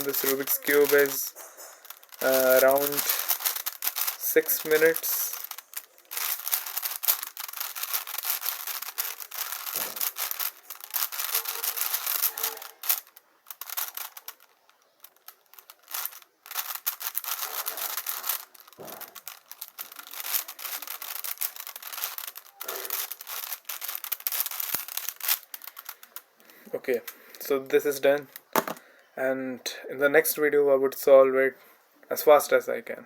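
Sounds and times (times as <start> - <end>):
puzzle cube layers clicking: 0.0 - 26.2.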